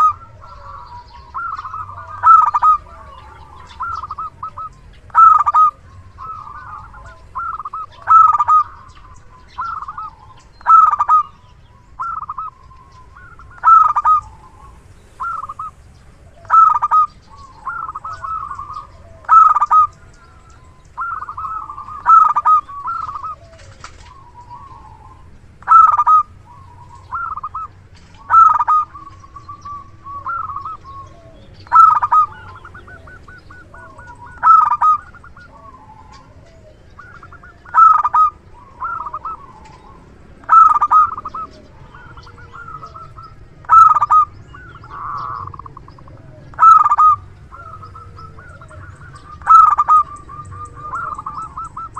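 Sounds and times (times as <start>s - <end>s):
dove cooing: 0.0s - 51.9s.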